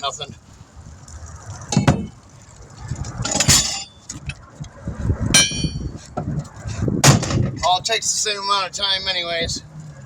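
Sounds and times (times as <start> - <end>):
metal tire tools clanking: 3.1 - 4.4, 5.3 - 8.0
sharp metallic clank ringing: 5.4 - 5.8.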